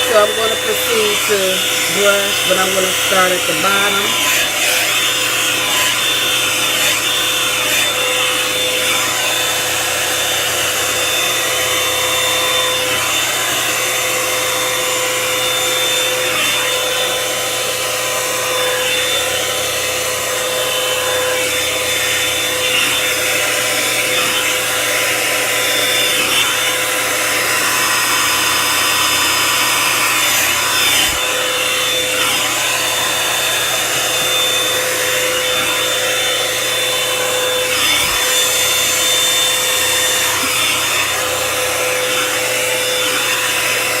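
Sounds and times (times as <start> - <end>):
hair dryer brush motor whine: 0.0 - 44.0.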